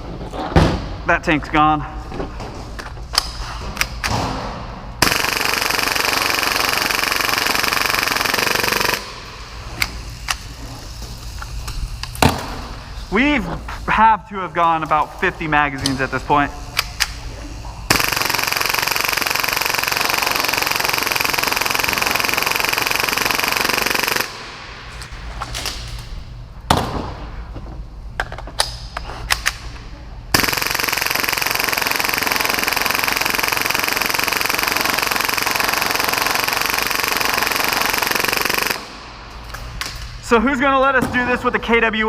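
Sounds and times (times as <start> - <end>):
airsoft pistol firing bursts: 5.0 - 10.5, 17.9 - 26.4, 30.3 - 39.1
sharp clicks: 17.9 - 26.4.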